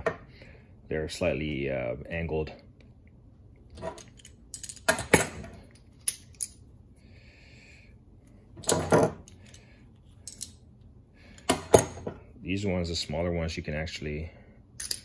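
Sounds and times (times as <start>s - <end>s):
metal pliers clicking and clinking: 10.2s - 10.6s.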